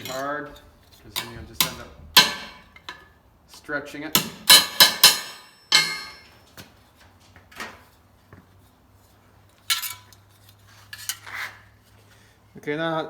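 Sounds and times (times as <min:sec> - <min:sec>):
sharp ringing metal clank: 0:00.0 - 0:03.0, 0:04.2 - 0:06.3
metal scraping: 0:00.0 - 0:03.2.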